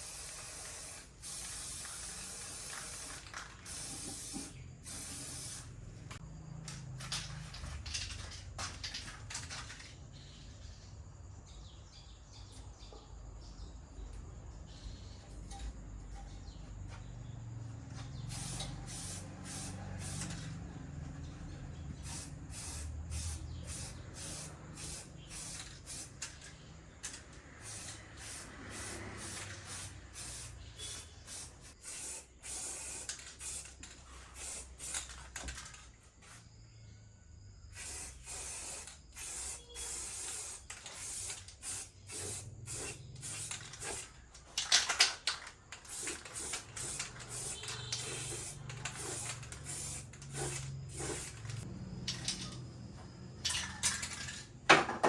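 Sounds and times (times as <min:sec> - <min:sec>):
short hissing spray bursts: 0:00.0 - 0:06.2, 0:18.2 - 0:20.5, 0:22.0 - 0:26.2, 0:27.6 - 0:35.5, 0:37.7 - 0:44.7, 0:45.9 - 0:51.7.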